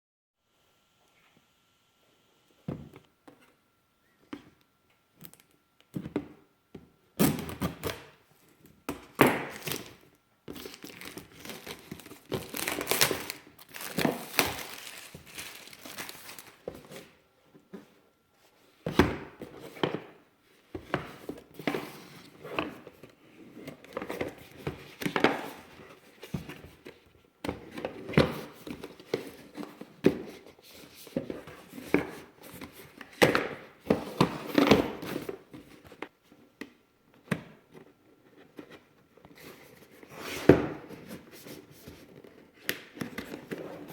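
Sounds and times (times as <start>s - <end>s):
packaging crinkling and tearing: 10.6s - 16.6s.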